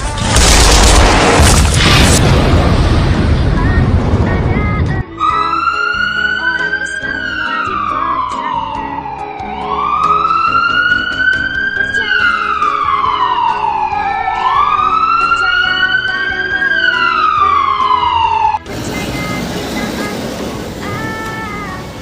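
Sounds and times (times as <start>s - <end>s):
siren wailing: 5.2s - 18.7s.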